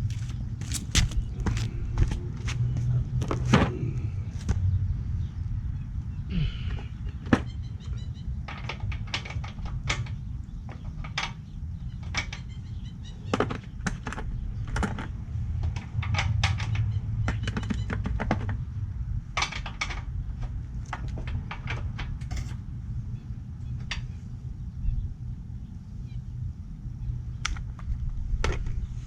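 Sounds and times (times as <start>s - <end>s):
steady low hum: 0.0s - 8.4s, 21.9s - 29.0s
hand tools clicking and clinking: 22.2s - 22.6s.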